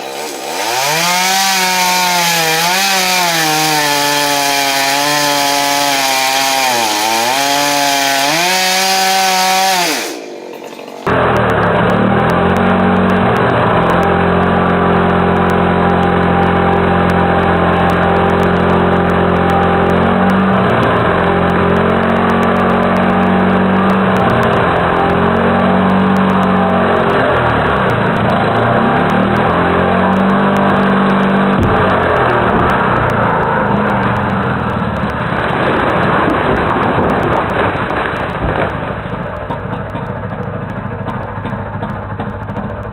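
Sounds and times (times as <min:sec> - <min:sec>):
motor running at high speed: 0:00.0 - 0:34.2.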